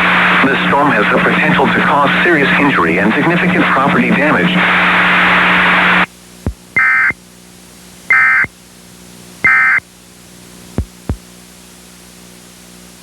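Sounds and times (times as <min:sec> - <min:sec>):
low steady hum: 0:00.0 - 0:07.2, 0:09.2 - 0:11.5
digital data tone bursts: 0:06.8 - 0:07.2, 0:08.1 - 0:08.5, 0:09.4 - 0:09.8.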